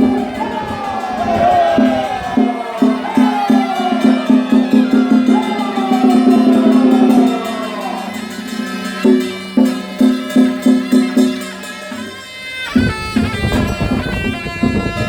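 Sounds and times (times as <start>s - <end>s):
melody of falling glides: 0.0s - 9.3s
wood block percussion: 0.0s - 15.0s.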